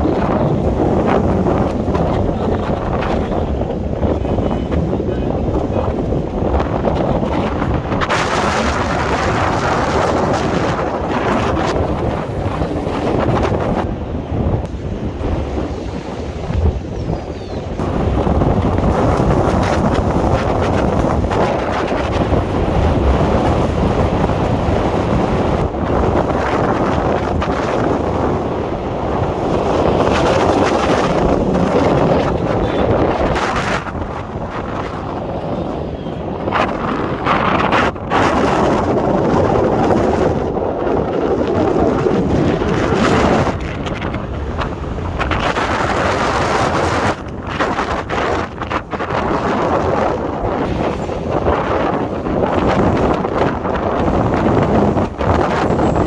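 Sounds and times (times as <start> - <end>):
steady low rumble: 0.0 - 38.0
wind buffeting microphone: 0.0 - 56.0.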